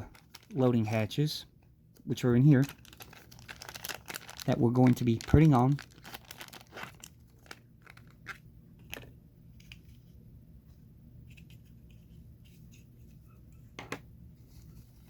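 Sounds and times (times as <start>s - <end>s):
packaging rustling: 0.0s - 1.1s, 2.6s - 9.0s.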